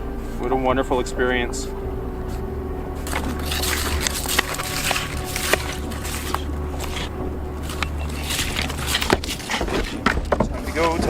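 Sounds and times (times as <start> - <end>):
steady low rumble: 0.0 - 11.0
fishing gear clicking and rustling: 2.2 - 11.0.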